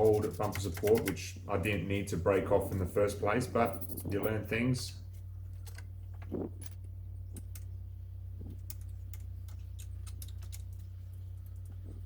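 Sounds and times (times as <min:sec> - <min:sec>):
steady low hum: 0:00.0 - 0:12.0
tools and parts clicking: 0:05.1 - 0:07.8, 0:08.4 - 0:12.0.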